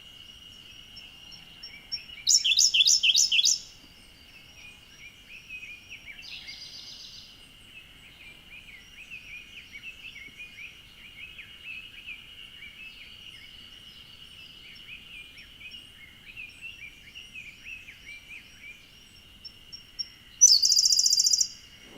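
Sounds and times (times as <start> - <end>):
bird singing trills: 0.6 - 21.7.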